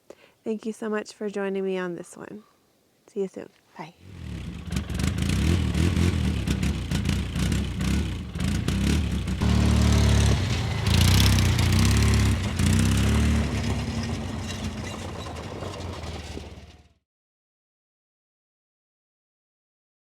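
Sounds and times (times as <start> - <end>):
utility vehicle engine revving: 4.0 - 16.9.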